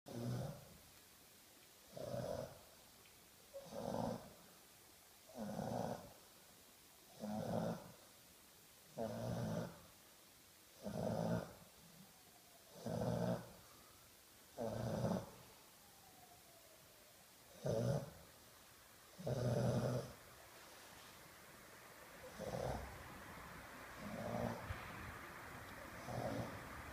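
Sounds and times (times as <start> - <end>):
dog snoring: 0.1 - 0.7, 1.9 - 2.6, 3.5 - 4.4, 5.3 - 6.2, 7.1 - 8.0, 8.9 - 9.9, 10.8 - 11.7, 12.7 - 13.6, 14.6 - 15.4, 17.5 - 18.2, 19.1 - 20.2, 22.2 - 23.0, 24.0 - 24.8, 26.0 - 26.6.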